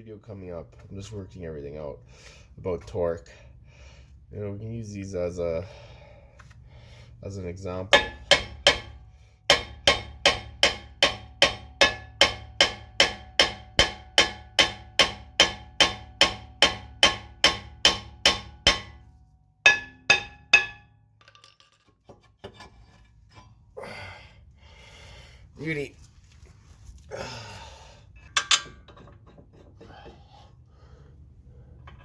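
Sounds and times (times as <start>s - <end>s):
hammer blows on metal: 7.9s - 19.0s.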